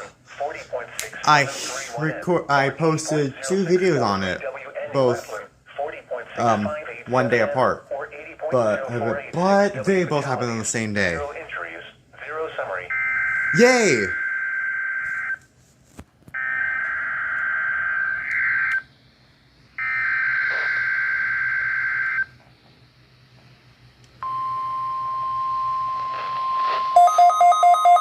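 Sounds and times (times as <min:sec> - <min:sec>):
steady warning alarm tone: 0:12.9 - 0:15.4, 0:19.8 - 0:22.3, 0:24.2 - 0:28.0.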